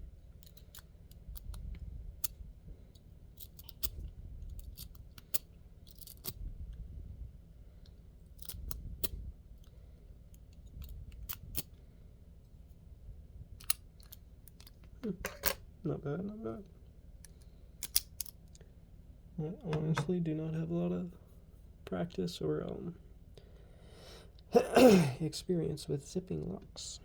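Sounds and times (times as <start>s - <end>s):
lock pick clicking and scraping: 0.4s - 6.4s, 8.4s - 9.2s, 10.3s - 11.7s, 13.6s - 15.6s, 17.3s - 18.4s.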